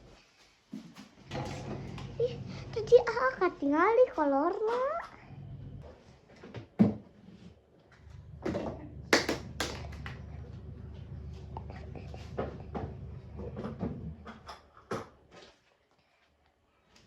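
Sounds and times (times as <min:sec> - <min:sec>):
steady low hum: 0:01.3 - 0:06.0, 0:07.9 - 0:14.4.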